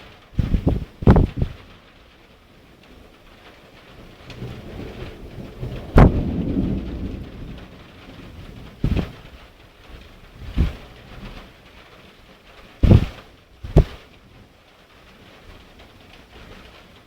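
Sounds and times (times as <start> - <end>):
steady rain: 0.0 - 17.0
thunder rumbling and cracking: 0.4 - 1.8, 2.5 - 14.1.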